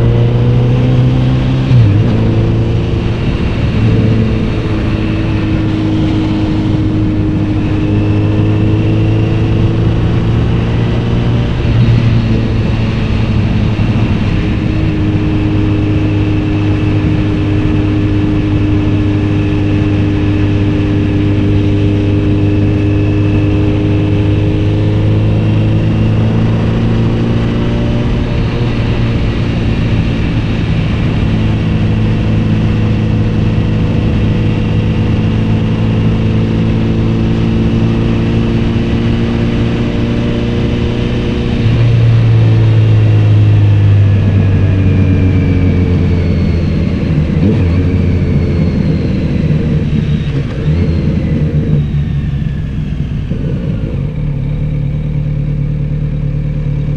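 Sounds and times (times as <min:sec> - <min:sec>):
motorcycle engine and exhaust: 0:00.0 - 0:56.9.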